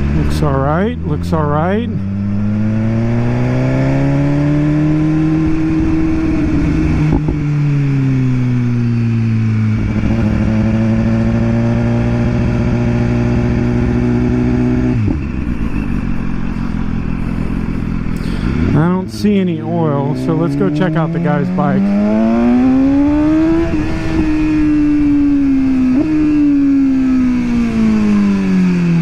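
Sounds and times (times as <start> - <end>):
motorcycle engine revving: 0.0 - 29.0.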